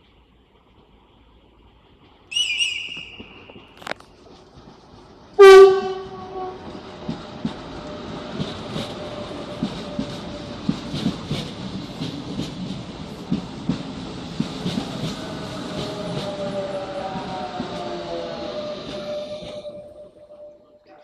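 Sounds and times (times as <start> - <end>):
train wheels clicking over rail joints: 0.0 - 20.0
high whistle tone: 2.3 - 4.0
train horn blast: 5.4 - 7.1.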